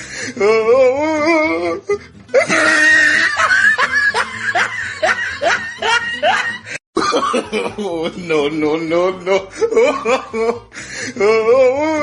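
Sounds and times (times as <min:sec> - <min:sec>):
music: 0:00.0 - 0:12.0
person laughing rapidly: 0:02.3 - 0:08.4, 0:09.3 - 0:11.6.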